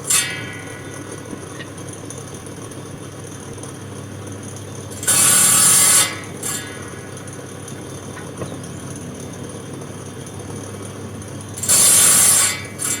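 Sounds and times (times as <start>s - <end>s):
cutting tool screeching on wood: 0.0s - 1.8s, 4.9s - 7.1s, 11.6s - 13.0s
wood lathe running: 0.0s - 13.0s.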